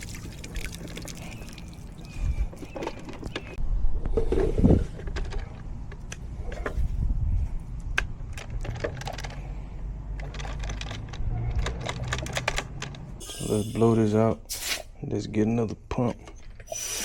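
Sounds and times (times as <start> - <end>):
clatter of handling parts and tools: 2.5 - 3.6, 4.2 - 6.9, 8.0 - 13.5.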